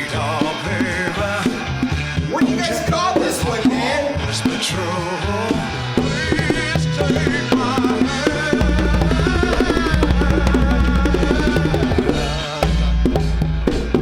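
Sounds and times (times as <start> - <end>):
bass line: 0.0 - 14.0
hand drum percussion: 5.5 - 14.0.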